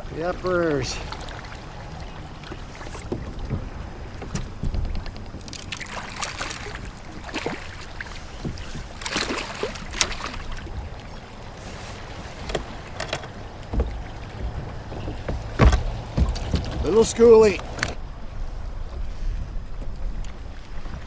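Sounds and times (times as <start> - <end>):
water splashing around kayak: 0.0 - 21.0
small knocks and clicks: 2.9 - 5.9, 12.4 - 18.0.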